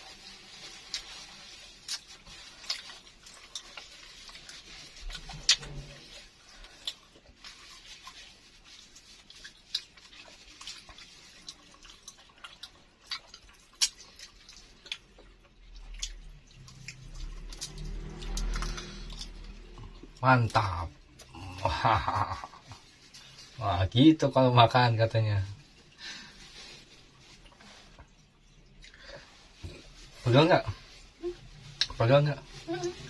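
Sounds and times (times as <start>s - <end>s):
chewing and lip smacks: 1.8s - 6.0s, 6.7s - 8.2s, 9.2s - 20.2s.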